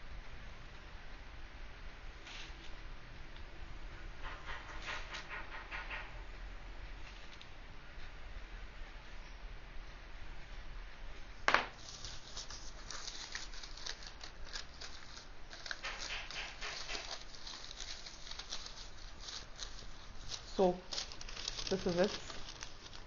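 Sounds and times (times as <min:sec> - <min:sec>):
baking paper rustling and crinkling: 0:11.6 - 0:23.0.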